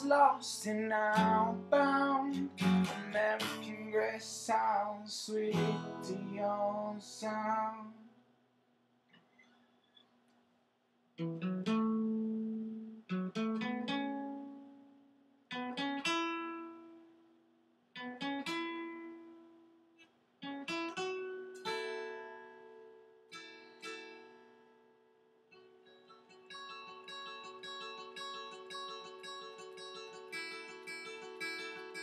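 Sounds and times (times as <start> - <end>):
acoustic guitar strummed chords: 0.0 - 8.1, 11.2 - 17.1, 20.4 - 32.0.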